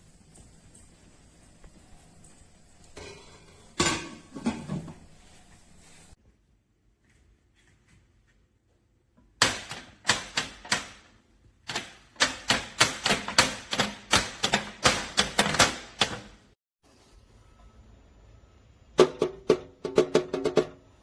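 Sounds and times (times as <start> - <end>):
hard objects knocking: 19.0 - 20.8.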